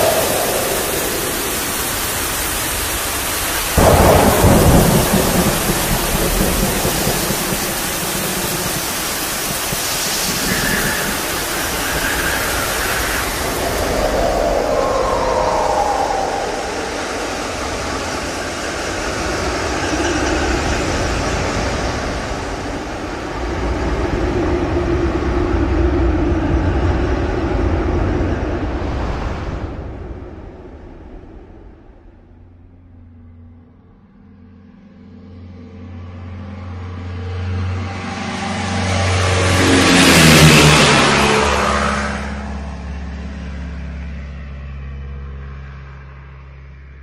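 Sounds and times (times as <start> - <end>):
moving vehicle rumble: 0.0 - 47.0
vehicle passing by: 34.5 - 47.0.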